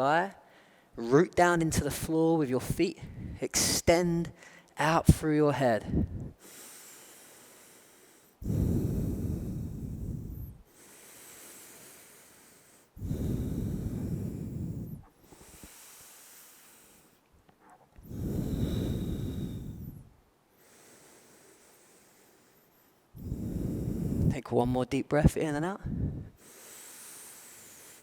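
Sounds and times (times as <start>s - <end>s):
person breathing deeply: 0.4s - 1.0s, 5.8s - 17.2s, 18.0s - 24.4s, 25.8s - 28.0s.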